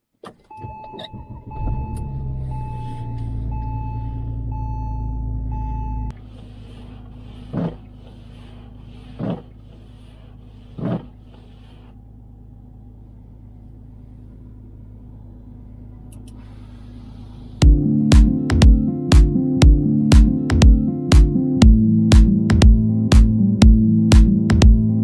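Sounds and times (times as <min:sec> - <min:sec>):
car engine drone inside cabin: 0:01.1 - 0:18.0.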